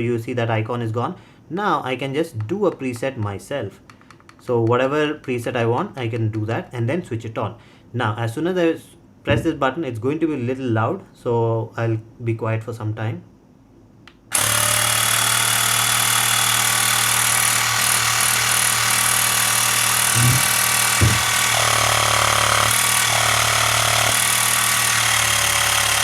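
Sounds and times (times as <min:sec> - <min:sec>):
air compressor buzzing: 0:14.3 - 0:26.0
brief knocks: 0:21.0 - 0:21.2.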